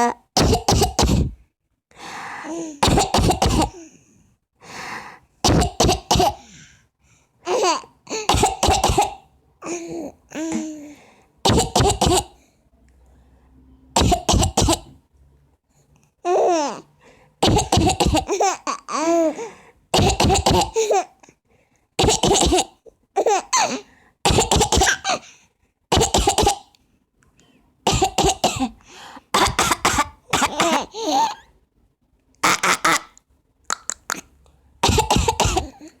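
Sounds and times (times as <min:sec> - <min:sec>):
woman coughing: 0:00.4 - 0:01.4, 0:02.8 - 0:03.8, 0:05.5 - 0:06.4, 0:08.2 - 0:09.2, 0:11.5 - 0:12.3, 0:14.0 - 0:14.9, 0:17.4 - 0:18.4, 0:20.0 - 0:20.9, 0:24.3 - 0:25.2, 0:25.9 - 0:26.6, 0:27.9 - 0:31.4, 0:34.8 - 0:36.0.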